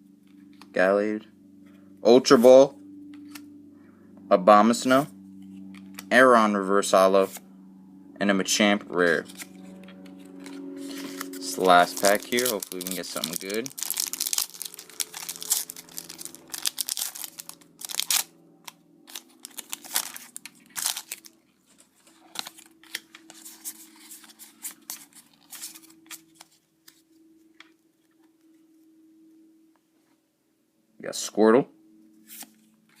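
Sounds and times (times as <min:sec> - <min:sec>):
foil wrapper tearing and crinkling: 0:10.4 - 0:18.3, 0:19.1 - 0:21.3, 0:22.2 - 0:26.4.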